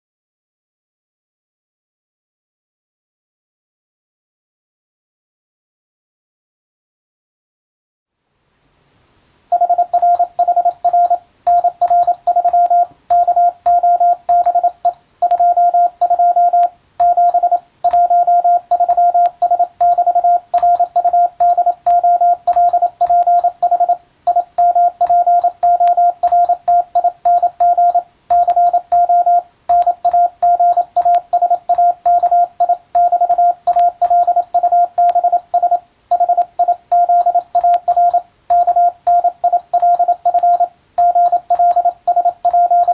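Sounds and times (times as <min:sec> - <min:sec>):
morse code beeping: 0:09.5 - 0:42.9.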